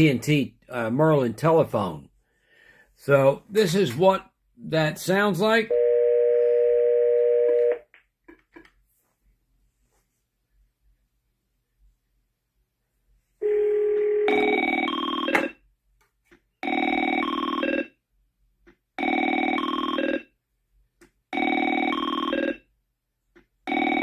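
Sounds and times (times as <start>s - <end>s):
electronic phone ringing: 5.7s - 7.8s, 13.4s - 15.6s, 16.6s - 18.0s, 19.0s - 20.4s, 21.3s - 22.7s, 23.7s - 24.0s.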